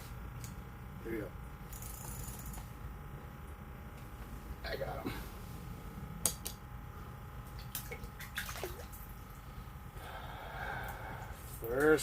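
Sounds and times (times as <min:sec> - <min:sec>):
water splashing and dripping: 0:07.6 - 0:09.2.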